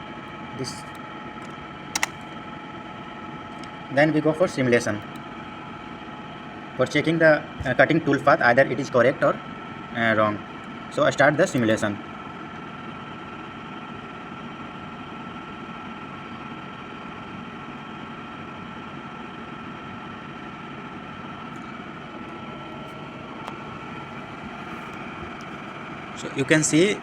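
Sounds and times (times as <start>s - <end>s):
machinery humming: 0.0s - 14.2s, 21.3s - 27.0s
thin constant whine: 0.0s - 27.0s.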